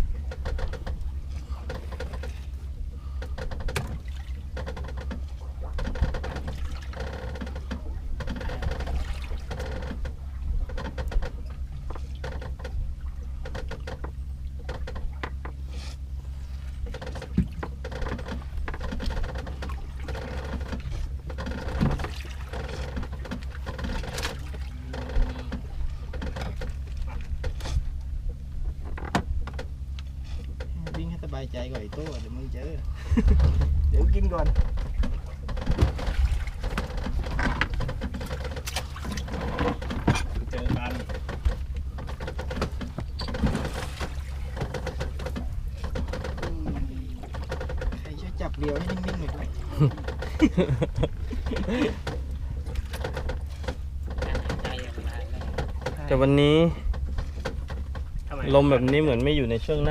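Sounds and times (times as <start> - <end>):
boat engine running: 0.0 - 59.9
water sloshing: 0.0 - 59.9.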